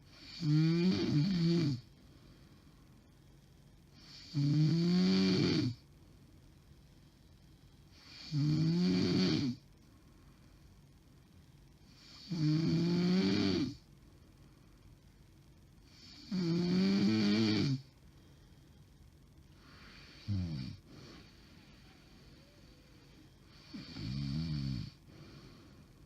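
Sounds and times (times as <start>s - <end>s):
woman snoring: 0.0s - 1.9s, 4.0s - 5.8s, 8.0s - 9.6s, 11.9s - 13.8s, 15.9s - 17.9s, 19.6s - 25.5s.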